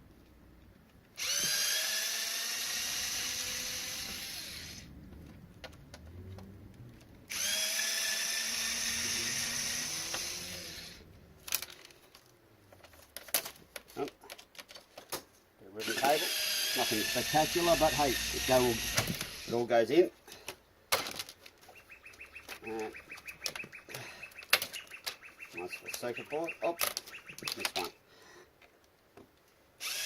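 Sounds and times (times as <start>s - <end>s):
power drill running: 1.2s - 4.9s, 7.3s - 11.0s, 15.8s - 19.6s, 29.8s - 30.0s.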